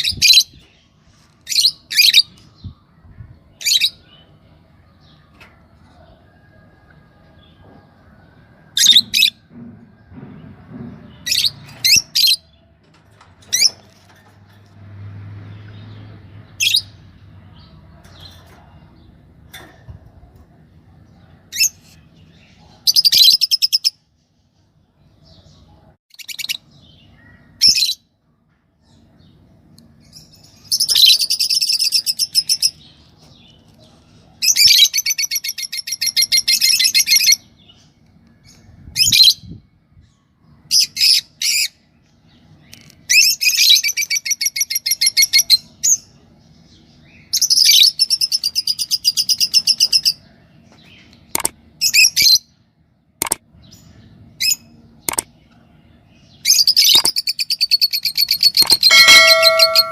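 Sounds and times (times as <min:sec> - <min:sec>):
lovebirds chirping and trilling: 0:00.0 - 0:06.6, 0:08.6 - 0:59.9.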